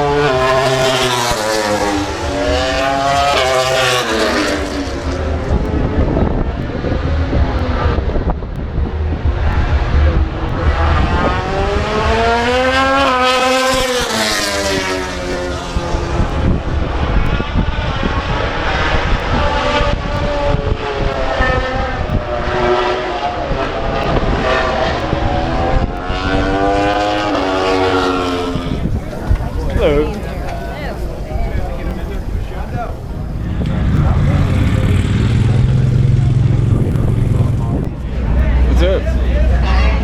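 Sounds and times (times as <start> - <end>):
racing motorcycles passing by: 0.0 - 40.0.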